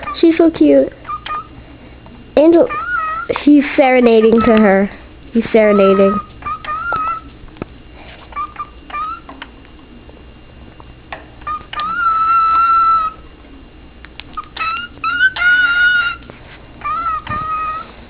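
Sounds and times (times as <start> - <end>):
bird whistling a song: 1.0 - 1.5, 5.7 - 7.3, 11.4 - 13.2, 14.3 - 16.2
bird chirps: 11.4 - 13.2.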